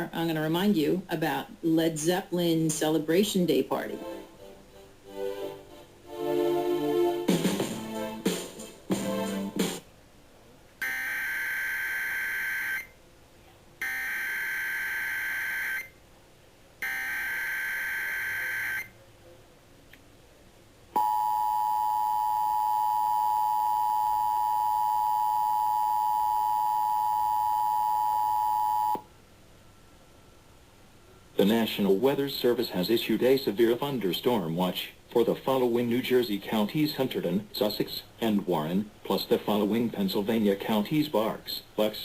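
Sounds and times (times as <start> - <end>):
two-tone attention signal: 16.8 - 18.9, 21.0 - 29.1.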